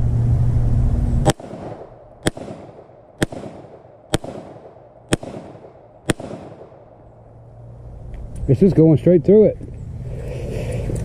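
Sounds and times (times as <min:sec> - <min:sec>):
gunshots with echo: 0:01.2 - 0:07.0.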